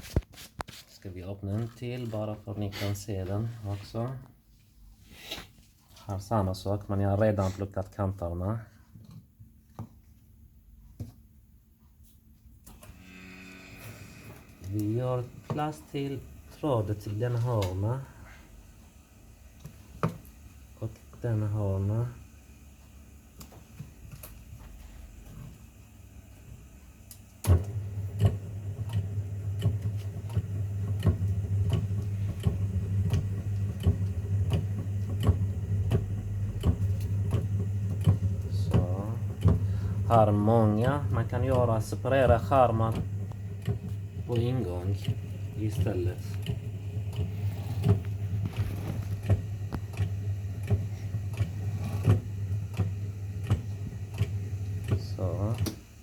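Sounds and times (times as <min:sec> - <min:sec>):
electric motor humming: 0:12.8 - 0:18.0, 0:27.5 - 0:55.8.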